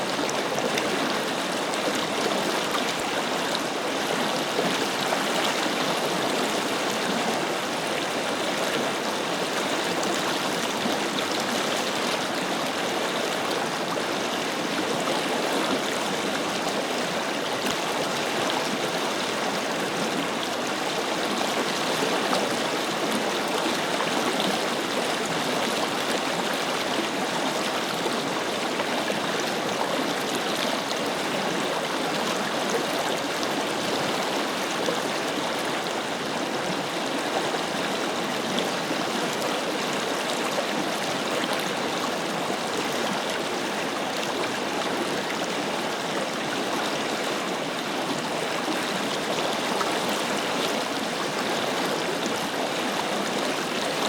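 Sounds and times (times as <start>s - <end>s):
river flowing over rocks: 0.0s - 54.0s.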